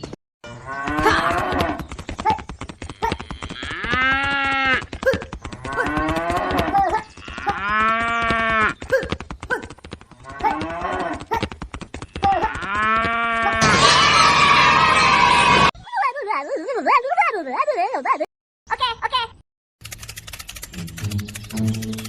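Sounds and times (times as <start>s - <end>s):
cattle mooing: 0.6s - 1.8s, 5.6s - 8.7s
fine clicking: 19.8s - 22.0s.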